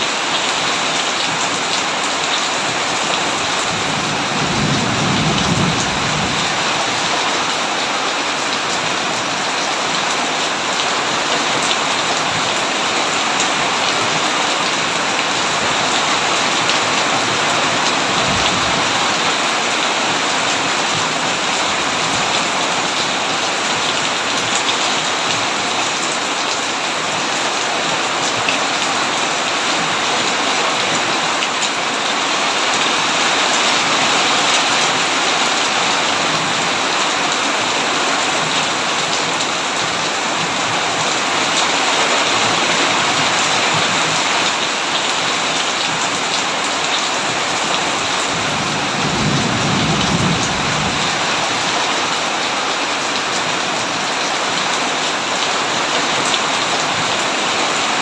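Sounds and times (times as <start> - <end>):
heavy rain hissing: 0.0 - 58.0
low rumble of thunder: 3.7 - 6.9, 48.4 - 51.2.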